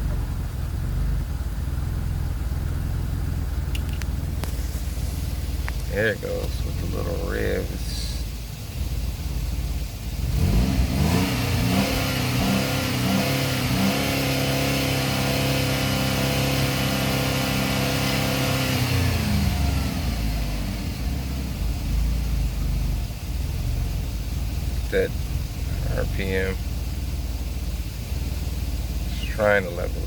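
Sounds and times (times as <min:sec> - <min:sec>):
car engine revving: 0:00.0 - 0:30.0.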